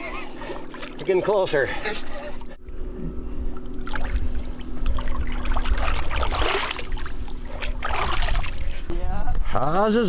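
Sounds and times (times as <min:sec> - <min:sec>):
faint steady hum: 0:00.0 - 0:09.4
water splashing and trickling: 0:03.5 - 0:08.9.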